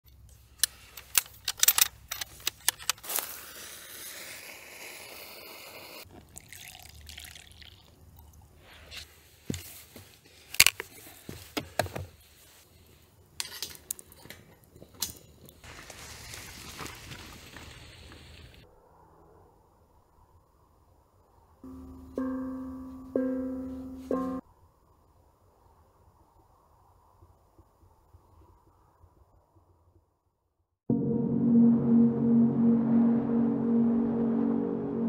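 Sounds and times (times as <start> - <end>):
water pouring: 6.2 - 8.4.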